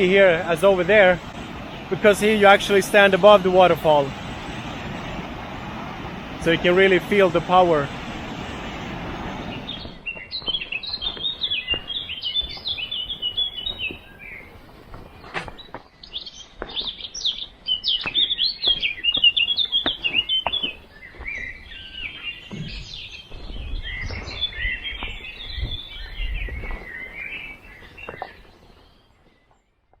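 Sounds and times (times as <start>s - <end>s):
songbirds chirping and singing: 9.4s - 29.6s.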